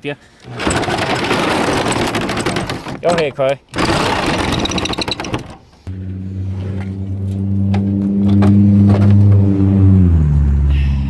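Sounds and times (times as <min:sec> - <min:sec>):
motor humming: 0:03.8 - 0:09.8.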